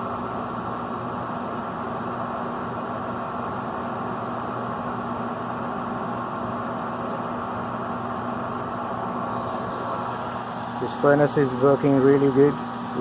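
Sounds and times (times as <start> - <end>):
furnace fan motor humming: 0.0 - 13.0
gas burners rushing: 5.7 - 13.0.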